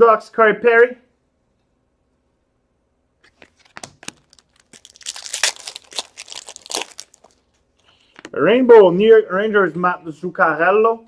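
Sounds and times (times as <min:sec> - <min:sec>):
foil wrapper tearing and crinkling: 0:03.3 - 0:07.6.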